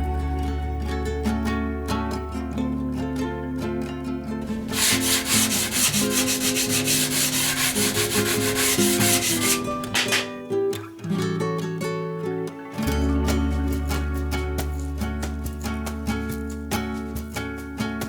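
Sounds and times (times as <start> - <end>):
guitar music: 0.0 - 18.0
sanding strokes rasping: 4.6 - 10.3.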